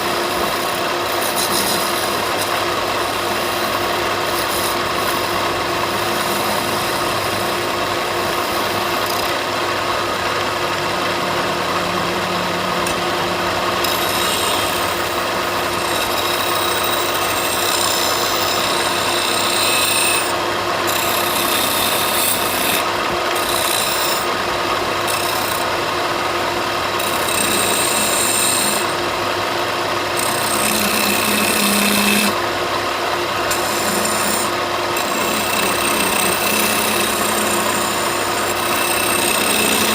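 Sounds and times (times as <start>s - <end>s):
power tool sanding wood: 0.0s - 24.4s, 27.0s - 29.0s, 30.1s - 32.5s, 33.2s - 39.9s.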